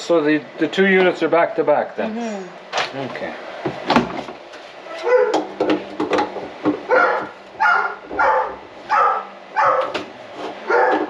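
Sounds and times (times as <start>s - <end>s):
dog barking: 4.9s - 5.4s, 6.9s - 10.0s, 10.7s - 11.0s.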